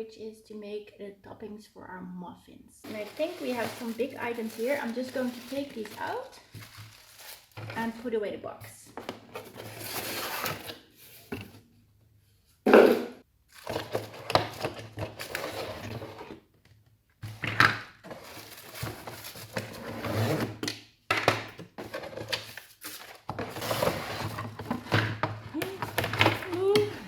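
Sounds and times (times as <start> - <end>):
plastic and cardboard rustling: 2.8 - 11.6, 13.5 - 16.5, 17.2 - 20.7, 21.3 - 27.0.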